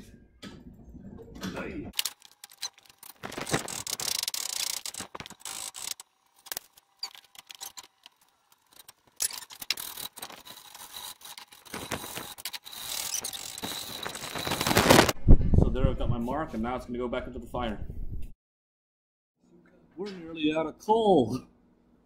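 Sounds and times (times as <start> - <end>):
metallic clicks and scrapes: 1.9 - 15.1.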